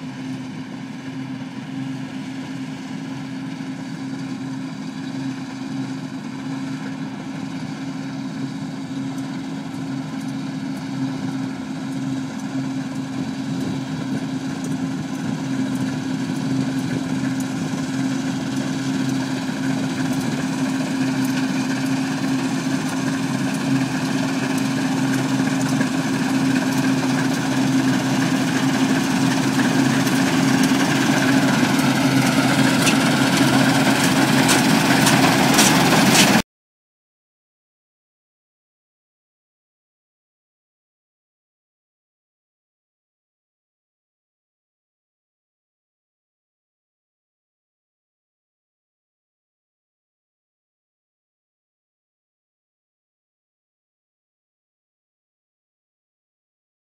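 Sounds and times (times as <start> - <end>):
combine harvester droning: 0.0 - 36.4.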